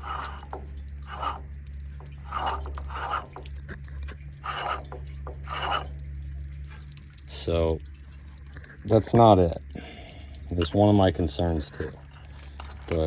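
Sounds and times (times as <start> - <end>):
water dripping and splashing: 0.0 - 13.0
water pump humming: 0.0 - 13.0.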